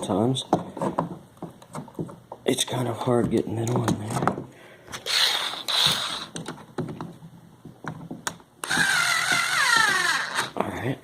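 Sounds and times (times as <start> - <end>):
electric screwdriver motor whine: 5.1 - 6.3, 8.6 - 10.5.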